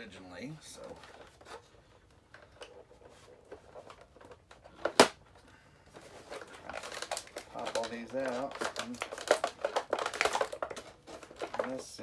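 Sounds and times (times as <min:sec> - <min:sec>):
plastic clicks and rustles: 0:00.7 - 0:12.0
plastic snapping: 0:04.2 - 0:05.2, 0:06.4 - 0:11.8.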